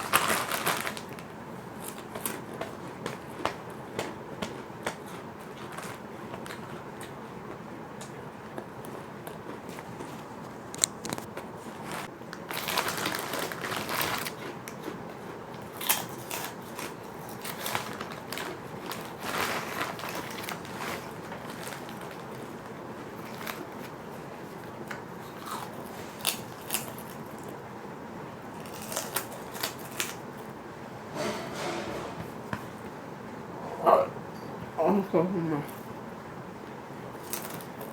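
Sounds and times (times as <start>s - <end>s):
person crunching crisp crackers: 8.6s - 22.5s, 25.2s - 27.6s, 28.5s - 30.2s, 37.1s - 37.9s.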